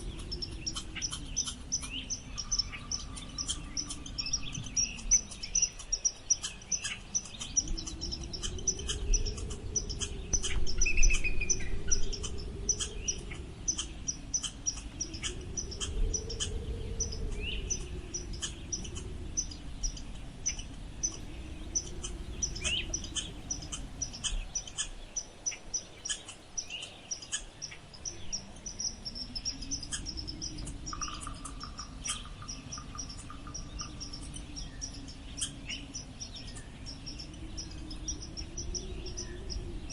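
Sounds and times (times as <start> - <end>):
bird trill: 0.0 - 39.9
gliding bird calls: 0.0 - 39.9
wind blowing in gusts: 0.0 - 39.9.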